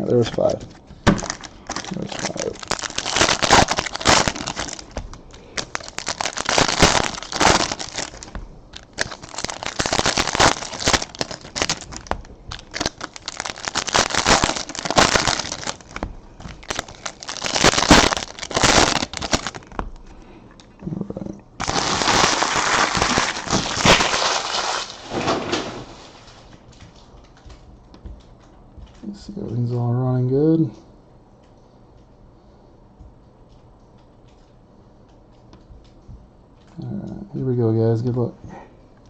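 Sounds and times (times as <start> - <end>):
card pack wrappers crinkling: 0.0 - 20.2, 21.6 - 29.4.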